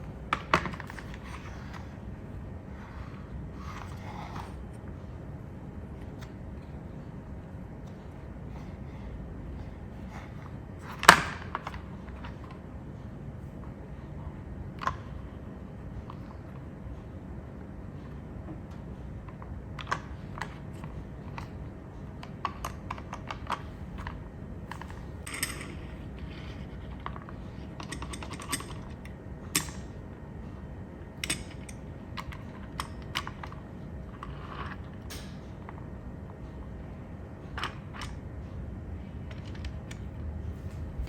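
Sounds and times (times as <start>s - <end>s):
steady low rumble: 23.6s - 41.0s.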